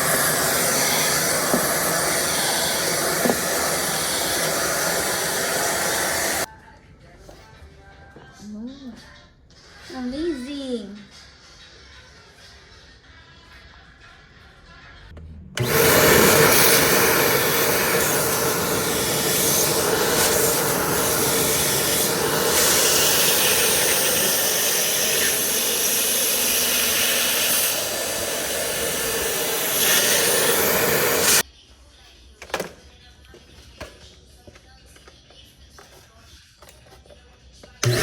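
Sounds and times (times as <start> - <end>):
vacuum cleaner running: 0.0 - 6.5, 15.6 - 31.4.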